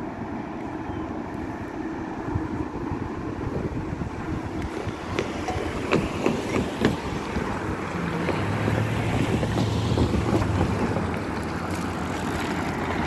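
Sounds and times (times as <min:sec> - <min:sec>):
freight train wheels rumbling: 0:03.0 - 0:13.0
wheels clicking over rail joints: 0:04.2 - 0:13.0.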